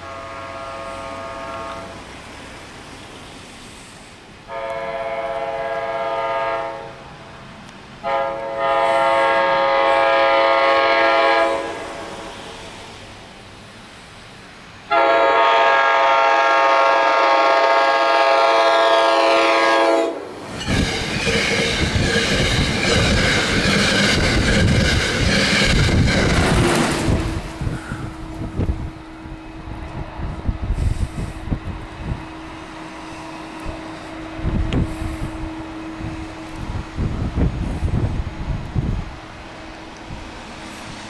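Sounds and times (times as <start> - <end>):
train horn blast: 0.0 - 2.0, 4.5 - 7.1, 8.0 - 12.1, 14.9 - 20.9
train wheels clattering over rails: 20.4 - 28.1.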